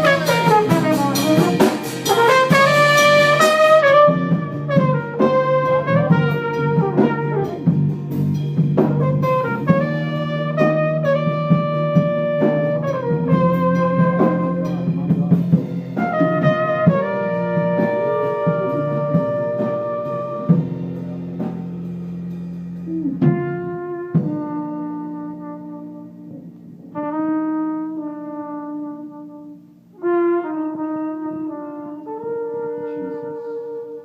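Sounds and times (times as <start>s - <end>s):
drum kit hits: 0.0s - 25.6s
trumpet playing held notes: 0.0s - 34.0s.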